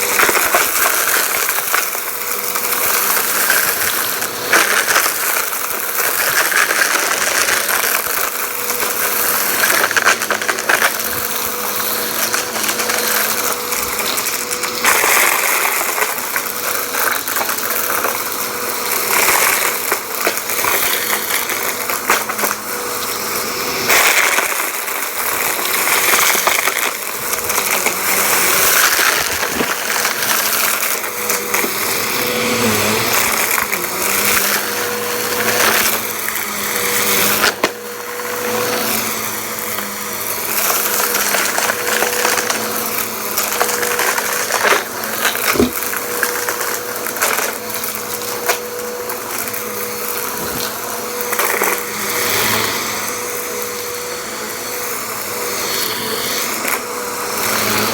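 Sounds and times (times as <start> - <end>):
debris crackling and rattling: 0.0 - 52.0
vacuum cleaner running: 0.0 - 57.9.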